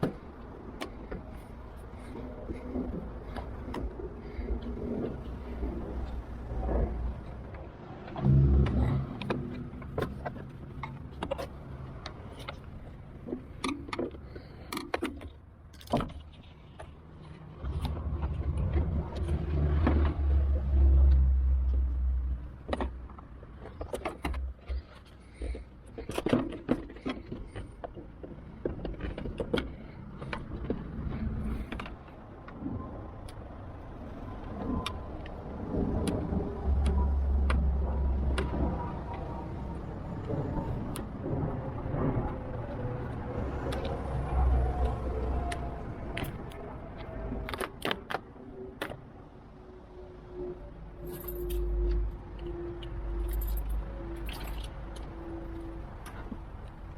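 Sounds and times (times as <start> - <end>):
low rumble: 1.9 - 12.3
clicks knocks and rattles of hand work: 9.2 - 21.2, 22.5 - 33.4.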